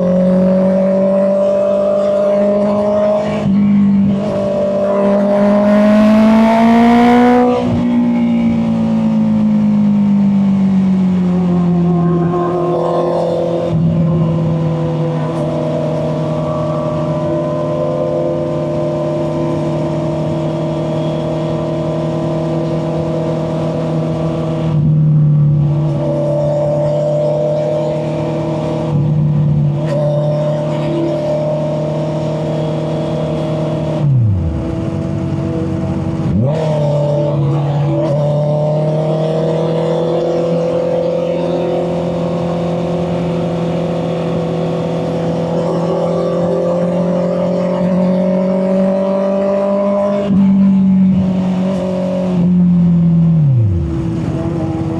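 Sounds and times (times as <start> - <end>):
motorcycle engine running: 30.5 - 37.6.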